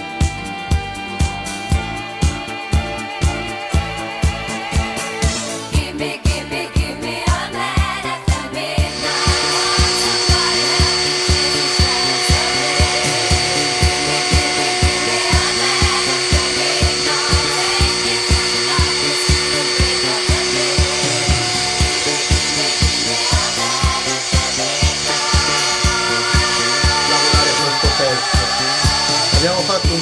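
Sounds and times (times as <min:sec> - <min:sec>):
music with steady beat: 0:00.0 - 0:30.0
cnc spindle whining and cutting: 0:08.8 - 0:30.0.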